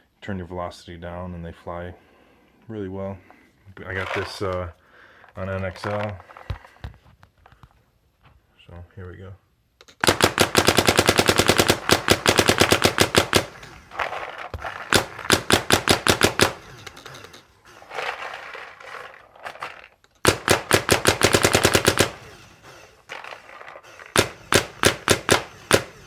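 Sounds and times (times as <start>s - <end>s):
paintball marker rapid firing: 10.0s - 17.2s, 20.2s - 22.5s, 23.1s - 26.0s.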